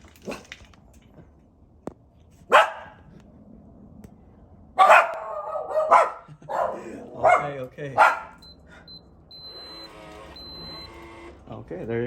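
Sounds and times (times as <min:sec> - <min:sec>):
dog barking: 0:02.5 - 0:03.0, 0:04.8 - 0:08.4.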